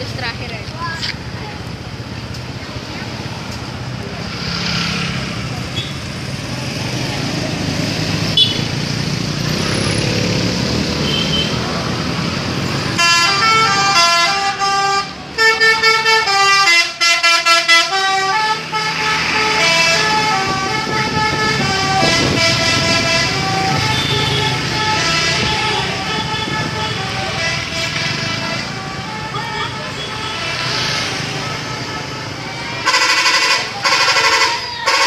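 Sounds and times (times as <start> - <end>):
bus engine and road noise: 0.0 - 35.0
bus horns playing melodies: 8.3 - 8.8, 11.0 - 11.6, 12.8 - 35.0.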